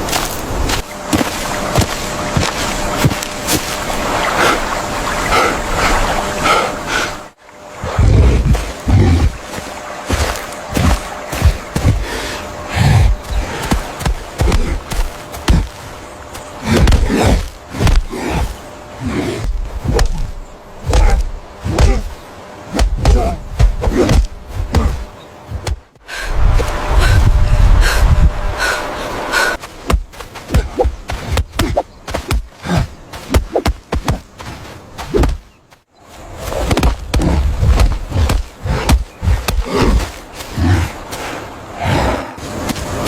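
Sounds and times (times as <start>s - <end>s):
heavy thumps and thuds: 0.0s - 3.9s, 8.1s - 26.0s, 29.6s - 35.5s, 36.4s - 41.0s
breathy voice-like sounds: 4.2s - 9.5s, 10.1s - 33.4s, 36.5s - 42.6s.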